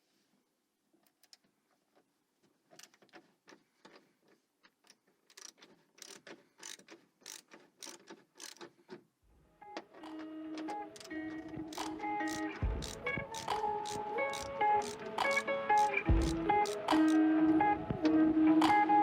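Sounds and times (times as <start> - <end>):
faint sharp mechanical clicks: 2.7 - 9.0, 9.8 - 17.2
background music: 9.5 - 19.0.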